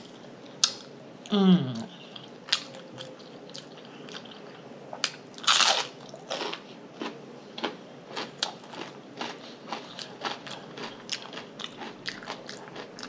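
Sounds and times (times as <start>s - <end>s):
chewing with mouth clicks: 2.1s - 13.0s
crunchy bite: 5.0s - 6.6s.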